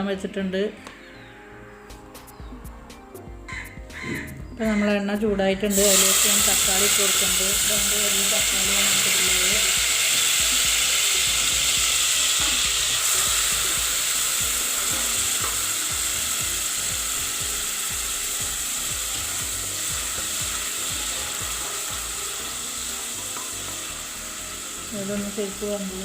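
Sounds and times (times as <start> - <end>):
tomatoes sizzling in oil: 5.7 - 26.0.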